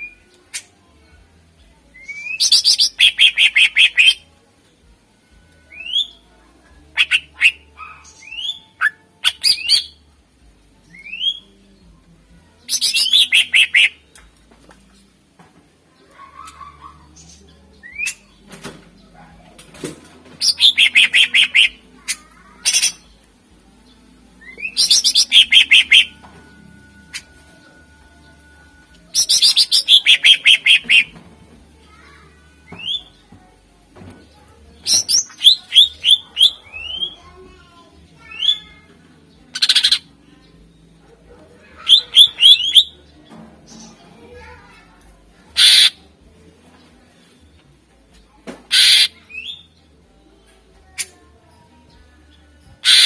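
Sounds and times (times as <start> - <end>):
bird singing trilled notes: 1.9 - 4.2, 5.7 - 6.2, 6.9 - 10.0, 10.8 - 11.6, 12.7 - 14.4, 20.4 - 31.2, 34.8 - 37.4, 41.8 - 44.6, 45.6 - 46.0, 48.7 - 53.0.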